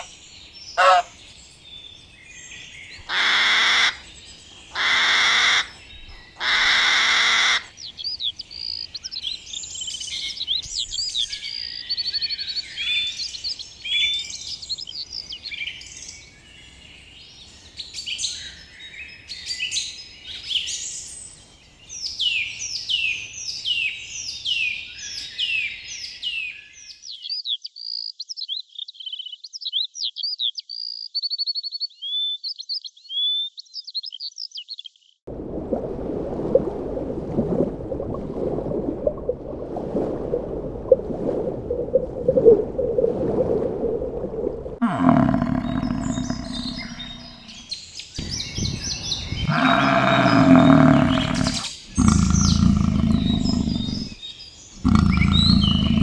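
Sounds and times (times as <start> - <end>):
deep animal calls: 0.8 - 1.1, 44.8 - 47.7, 49.2 - 54.2, 54.8 - 56.0
bird song chirping: 7.8 - 20.8, 44.8 - 56.0
high falling bird calls: 44.8 - 56.0.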